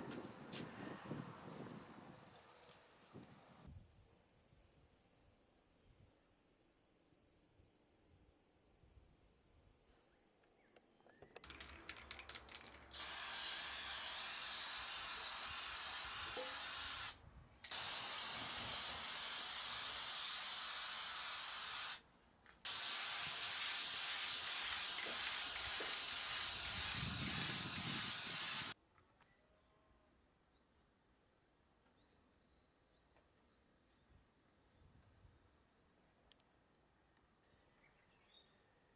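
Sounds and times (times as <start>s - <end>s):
spray can rattling: 11.4s - 22.0s, 22.7s - 28.8s
aerosol spray hissing: 12.9s - 22.0s, 22.7s - 28.8s.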